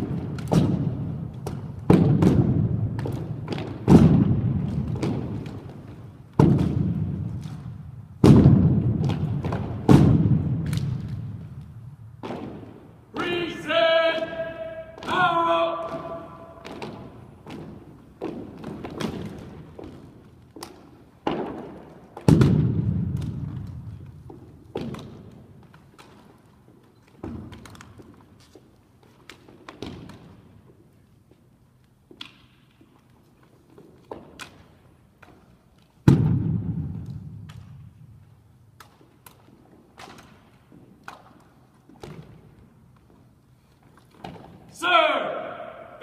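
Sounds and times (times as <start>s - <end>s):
rifles and boots thudding: 0.0s - 11.4s
heavy thud ringing in a hall: 13.2s - 17.7s, 36.0s - 37.4s.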